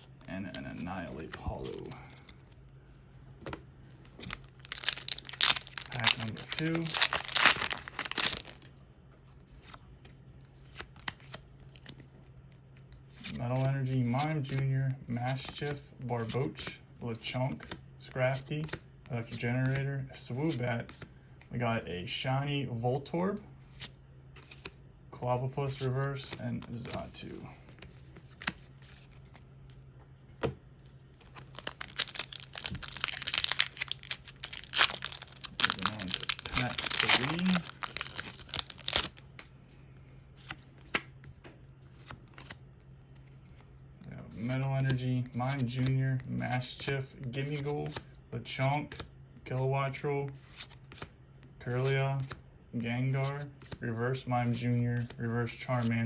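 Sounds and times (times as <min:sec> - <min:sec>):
cards clicking and rustling: 0:03.4 - 0:08.7, 0:09.4 - 0:12.1, 0:12.8 - 0:21.1, 0:30.4 - 0:42.6, 0:44.3 - 0:48.1
foil pack crinkling and tearing: 0:04.2 - 0:08.7, 0:31.4 - 0:39.2.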